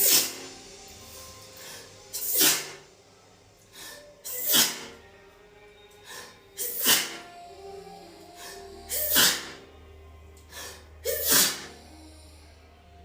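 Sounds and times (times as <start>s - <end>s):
woman sneezing: 2.2s - 2.8s, 4.3s - 4.9s, 6.6s - 7.2s, 8.9s - 9.6s, 11.0s - 11.8s.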